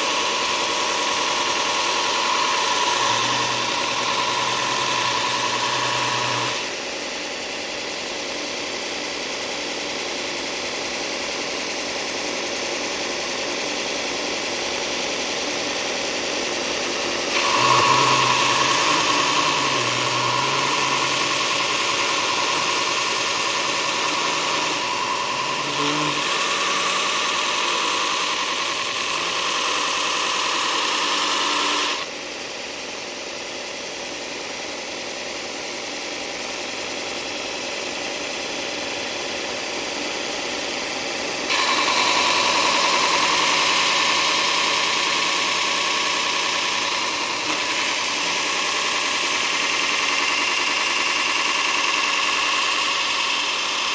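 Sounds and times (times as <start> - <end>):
power sander running: 0.0 - 6.9, 16.6 - 32.1, 41.5 - 53.9.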